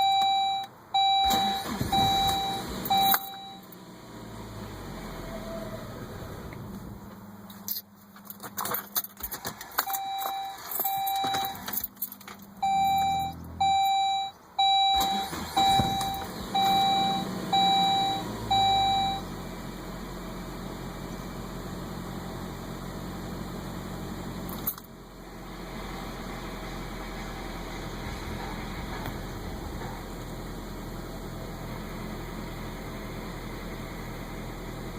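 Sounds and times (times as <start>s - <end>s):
warning chime beeping: 0.0s - 3.6s, 9.9s - 11.6s, 12.6s - 19.2s
car engine starting and idling: 0.0s - 34.9s.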